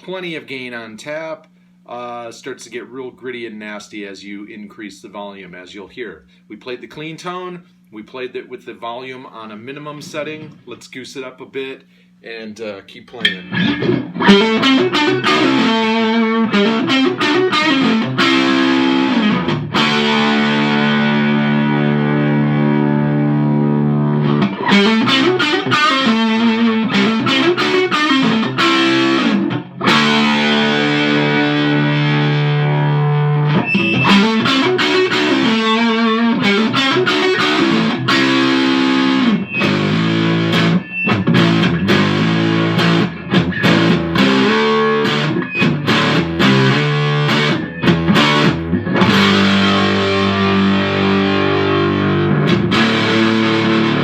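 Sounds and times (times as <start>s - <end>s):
gritty electric guitar: 13.1s - 54.0s.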